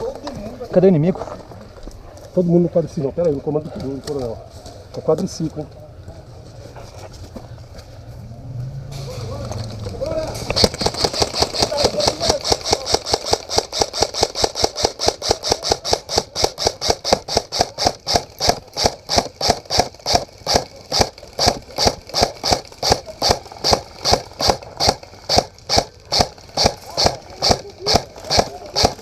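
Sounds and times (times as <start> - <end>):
quad bike engine pulsing: 9.3 - 29.0.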